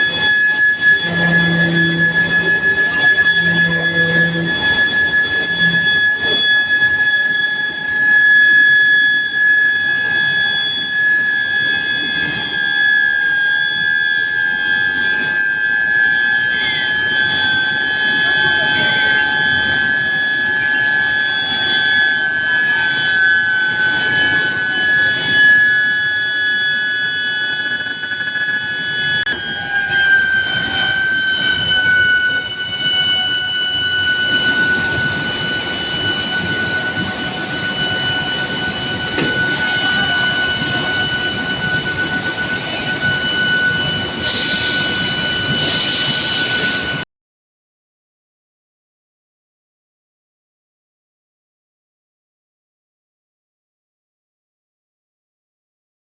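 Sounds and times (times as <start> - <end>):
high-pitched furnace coil whine: 0.0 - 47.0
machinery rumble: 0.0 - 47.0.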